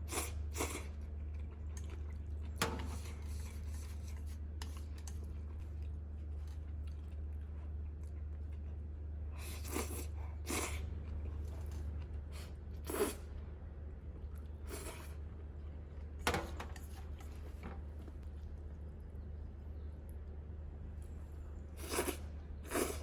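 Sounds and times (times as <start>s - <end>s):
breathy mouth eating sounds: 0.0s - 13.4s, 21.8s - 23.0s
steady low hum: 0.0s - 23.0s.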